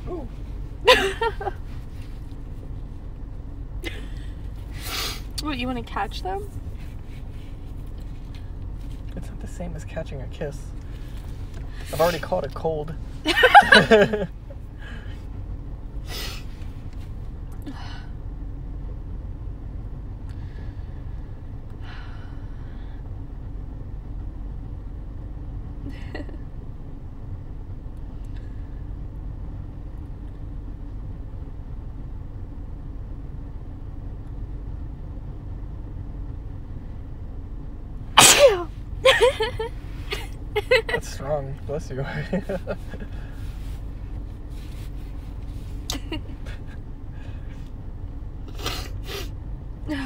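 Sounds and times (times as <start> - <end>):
catching breaths: 14.7 - 15.3, 46.6 - 47.7
woman sneezing: 38.2 - 40.3.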